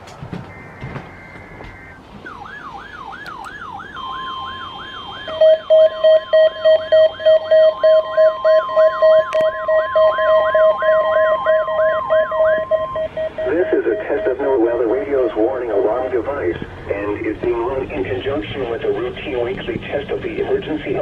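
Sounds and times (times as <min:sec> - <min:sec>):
steady alarm tone: 0:00.0 - 0:21.0
siren-like falling sweep alarm: 0:00.2 - 0:16.5
loud pulsing beeps: 0:00.5 - 0:02.4, 0:04.0 - 0:21.0.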